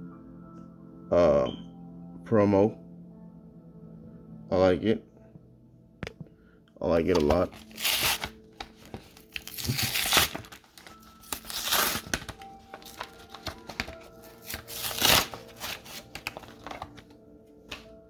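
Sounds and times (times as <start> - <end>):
faint background music: 0.0 - 18.0
plastic packaging crinkling and tearing: 7.1 - 17.9.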